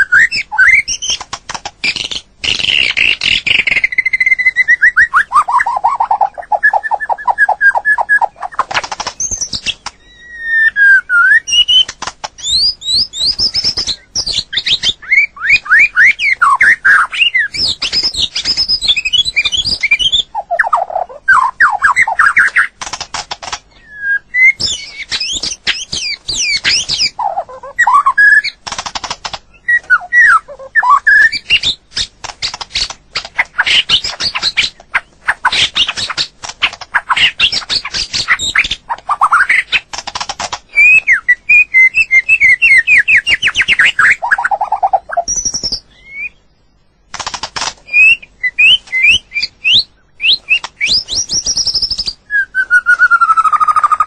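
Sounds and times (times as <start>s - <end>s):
songbird whistling phrases: 0.0s - 1.2s, 1.9s - 8.6s, 9.2s - 22.7s, 23.7s - 28.6s, 29.5s - 31.8s, 40.7s - 46.5s, 47.9s - 54.0s
bird harsh clicking notes: 0.0s - 46.2s, 47.1s - 49.7s, 50.3s - 52.2s.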